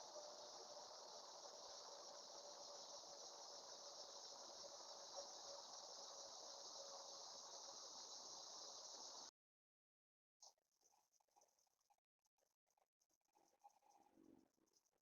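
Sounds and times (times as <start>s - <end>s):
crickets trilling: 0.0s - 9.3s.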